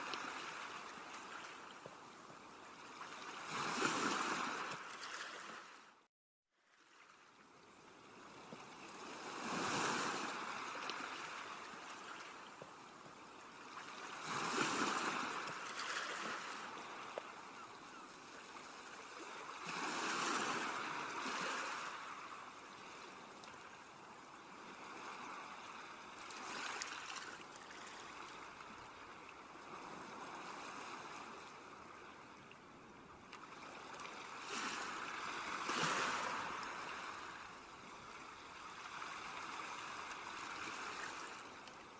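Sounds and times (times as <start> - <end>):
sea waves washing onto shore: 8.3 - 17.5, 33.4 - 41.9.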